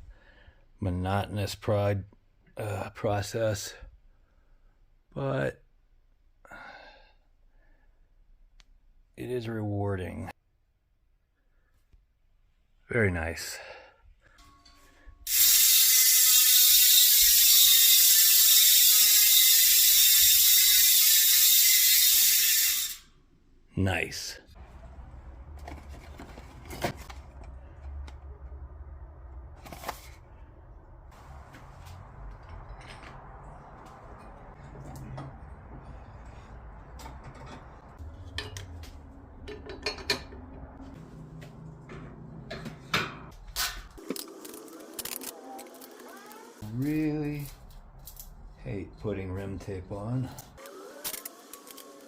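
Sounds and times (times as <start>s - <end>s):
bicycle freehub ratcheting buzz: 15.3s - 23.1s.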